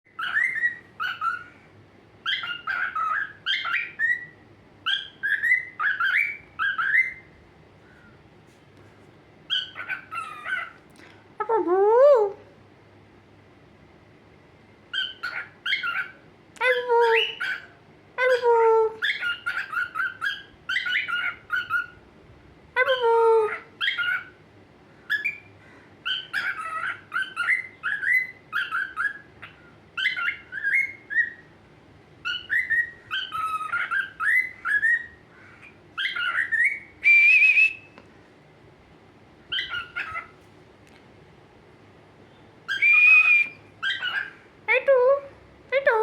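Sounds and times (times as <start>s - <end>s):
parrot chirping and whistling: 0.1s - 1.6s, 2.2s - 7.3s, 9.5s - 10.8s, 14.9s - 16.2s, 19.0s - 22.0s, 23.5s - 24.4s, 25.1s - 31.5s, 32.2s - 38.0s, 39.5s - 40.4s, 42.7s - 44.4s.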